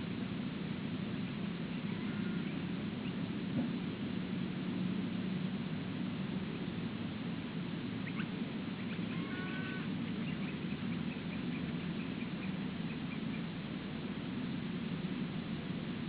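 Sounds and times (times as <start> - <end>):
low rumbling background noise: 0.0 - 16.0
eagles honking calls: 1.8 - 2.7, 8.1 - 13.5.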